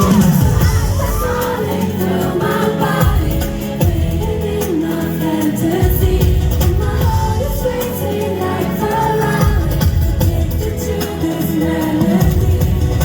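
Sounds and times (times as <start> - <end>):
loud pop music with singing: 0.0 - 13.0.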